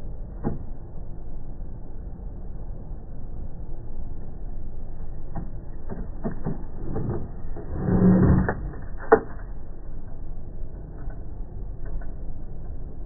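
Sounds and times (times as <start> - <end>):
steady low rumble: 0.0 - 13.0
scraping rumble: 6.1 - 13.0.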